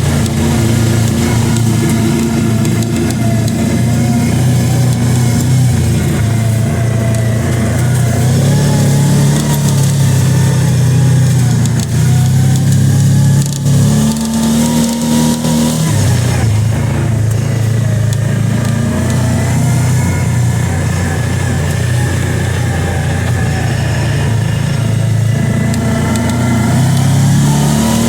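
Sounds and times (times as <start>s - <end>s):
vehicle engine revving: 0.0s - 28.0s.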